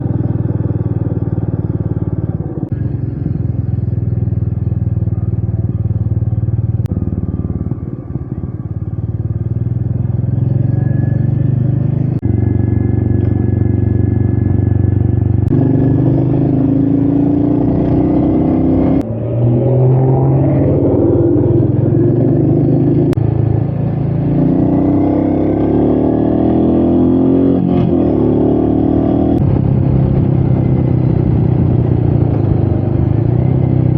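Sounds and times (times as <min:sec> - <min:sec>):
motorcycle engine running: 0:00.0 - 0:33.9
wind noise: 0:29.0 - 0:33.9.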